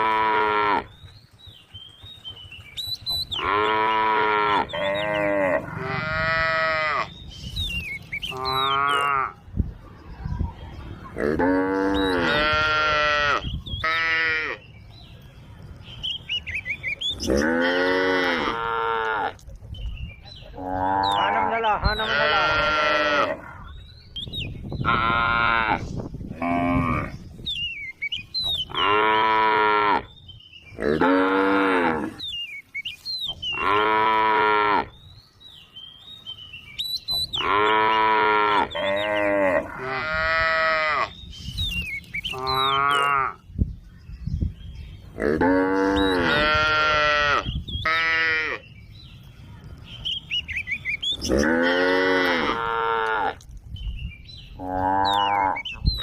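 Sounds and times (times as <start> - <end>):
cows mooing: 0.0 - 0.9, 3.4 - 7.2, 8.3 - 9.4, 11.2 - 14.6, 17.2 - 19.4, 20.6 - 23.7, 24.8 - 27.2, 28.7 - 30.1, 30.8 - 32.2, 33.6 - 34.9, 37.4 - 41.2, 42.3 - 43.4, 45.2 - 48.6, 51.2 - 53.4, 54.6 - 55.7
high bird chirps: 41.1 - 45.1, 48.6 - 51.4, 53.7 - 56.0.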